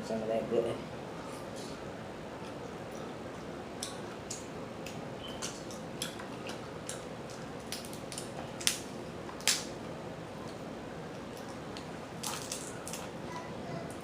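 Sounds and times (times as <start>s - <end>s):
seafood shells cracking: 5.4s - 8.8s, 12.2s - 13.1s.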